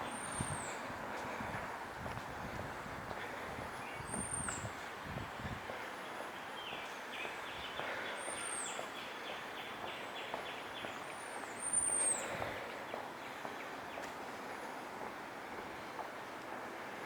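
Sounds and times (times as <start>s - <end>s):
birds chirping: 0.0s - 1.6s, 2.8s - 14.8s
city street traffic: 0.0s - 17.0s.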